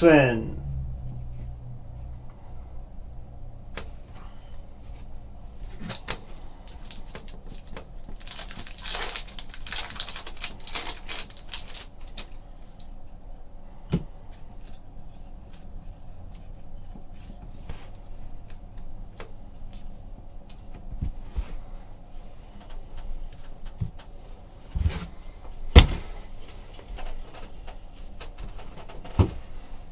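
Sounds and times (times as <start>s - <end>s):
cards and wrappers rustling: 5.8s - 12.4s.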